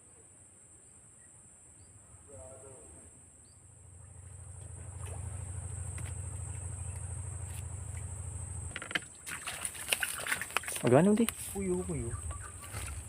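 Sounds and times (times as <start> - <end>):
small engine running: 3.7 - 10.4.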